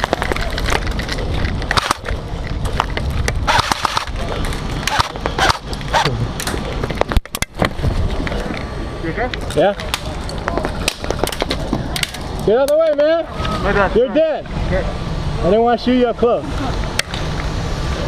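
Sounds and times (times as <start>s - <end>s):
steady low rumble: 0.0s - 18.0s
airsoft guns firing: 1.7s - 2.1s, 3.4s - 4.2s, 4.8s - 6.0s
distant shouts: 13.2s - 15.4s.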